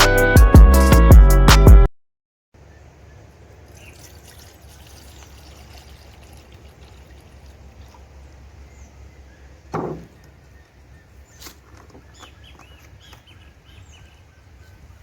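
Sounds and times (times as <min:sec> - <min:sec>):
water trickling: 0:03.2 - 0:08.8.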